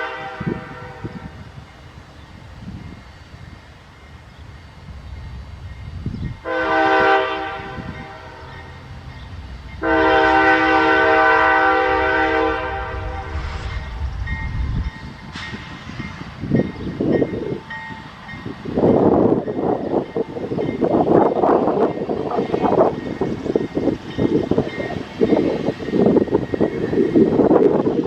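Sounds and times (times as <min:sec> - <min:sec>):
train air horn blasts: 0:00.0 - 0:01.5, 0:06.4 - 0:08.8, 0:09.8 - 0:14.3
low rumble: 0:11.8 - 0:17.0.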